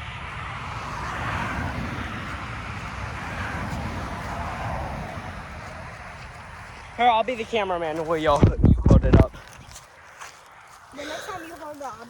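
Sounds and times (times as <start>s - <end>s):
car driving past: 0.0s - 7.8s.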